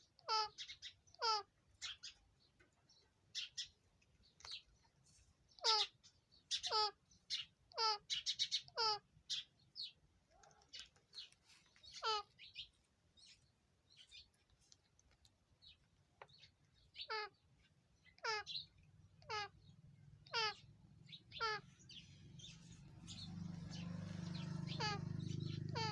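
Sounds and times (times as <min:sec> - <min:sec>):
parrot calling: 0:00.1 - 0:02.2, 0:05.6 - 0:09.5, 0:11.8 - 0:12.7, 0:16.9 - 0:17.4, 0:18.0 - 0:25.9
parrot chirps: 0:00.2 - 0:02.2, 0:05.6 - 0:09.5, 0:18.0 - 0:25.9.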